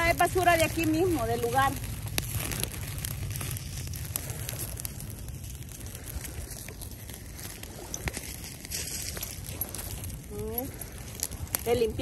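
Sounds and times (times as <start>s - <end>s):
low outdoor rumble: 0.0s - 12.0s
small crackles and clicks: 0.0s - 12.0s.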